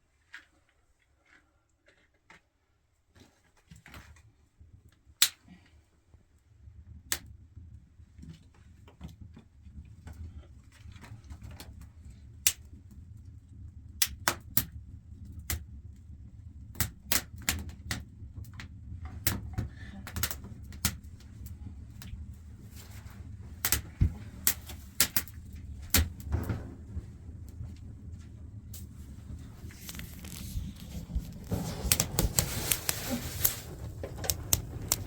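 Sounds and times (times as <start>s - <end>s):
low rumble: 18.0s - 35.0s
sharp clicks and knocks: 29.8s - 35.0s.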